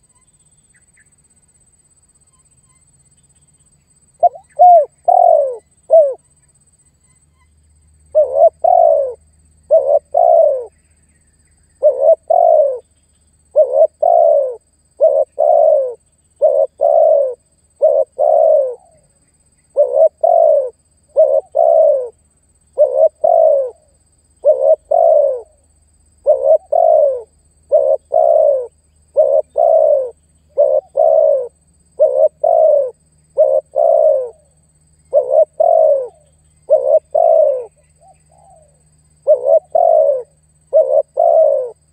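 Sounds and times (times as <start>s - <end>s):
dove cooing: 4.2s - 6.2s, 8.1s - 10.8s, 11.8s - 12.8s, 13.5s - 19.1s, 19.7s - 22.2s, 22.8s - 25.6s, 26.2s - 41.9s.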